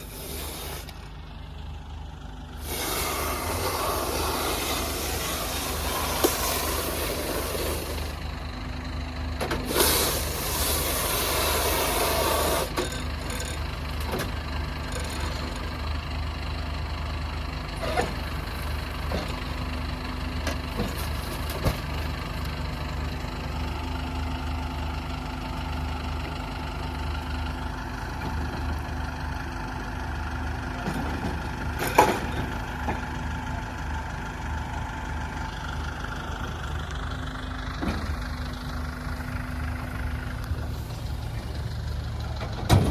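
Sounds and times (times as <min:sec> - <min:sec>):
tractor engine drone: 0:00.0 - 0:42.9
loud hissing rush: 0:02.6 - 0:08.2, 0:09.7 - 0:12.7.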